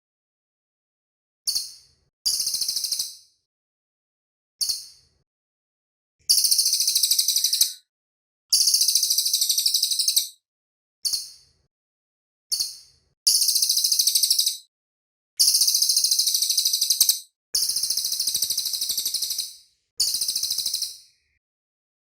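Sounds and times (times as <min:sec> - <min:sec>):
songbird chirping and trilling: 0:06.3 - 0:07.9, 0:08.6 - 0:10.4, 0:13.3 - 0:14.7, 0:15.4 - 0:21.2.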